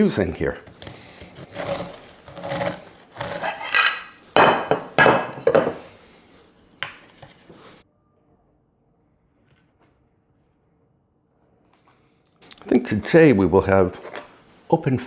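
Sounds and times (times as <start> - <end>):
knife rasping through bread: 0.6 - 4.1.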